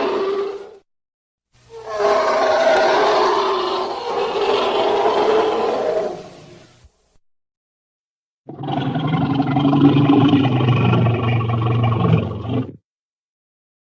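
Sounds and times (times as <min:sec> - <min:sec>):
dinosaur roar: 0:00.0 - 0:00.8, 0:01.7 - 0:06.5, 0:08.5 - 0:12.8.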